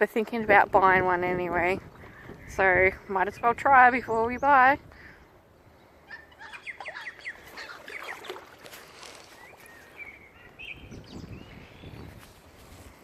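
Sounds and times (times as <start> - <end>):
birds chirping: 0.4 - 12.2.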